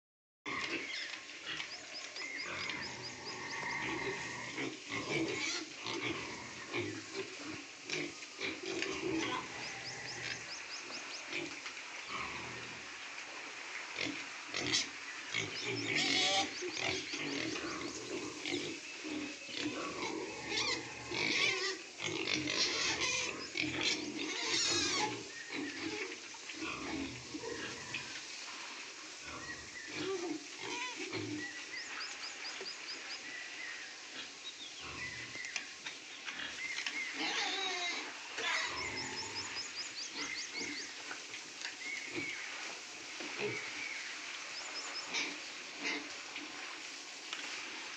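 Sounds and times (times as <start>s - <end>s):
pigs grunting and squealing: 0.5s - 10.6s, 14.0s - 28.2s, 29.2s - 31.7s, 36.3s - 40.9s, 45.0s - 46.2s.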